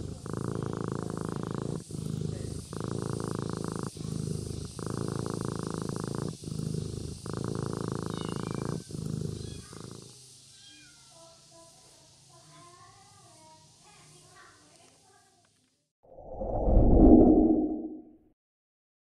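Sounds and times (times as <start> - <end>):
kitten purring: 0.0 - 11.8.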